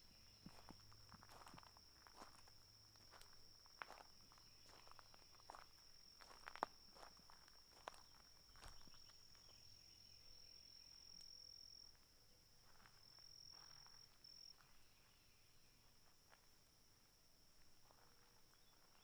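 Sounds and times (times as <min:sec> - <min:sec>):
high-pitched insect trill: 0:00.1 - 0:12.0
soft footsteps: 0:00.4 - 0:09.5.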